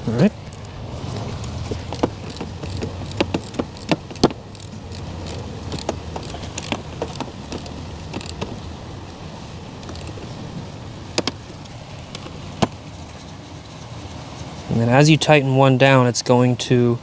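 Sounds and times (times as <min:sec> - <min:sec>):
hand tools clicking on bolts: 0:00.0 - 0:12.8.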